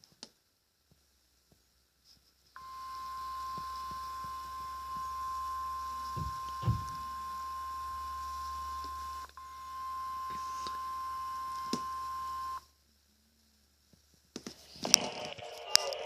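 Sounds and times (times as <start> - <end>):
steady high alarm beep: 2.6 - 12.6
radio crackling noise: 2.6 - 12.7, 14.4 - 16.0.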